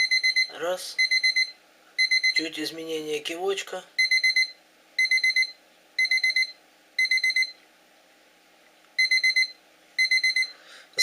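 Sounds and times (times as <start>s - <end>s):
high-pitched bite alarm beeps: 0.0s - 2.4s, 4.0s - 7.6s, 9.0s - 10.6s.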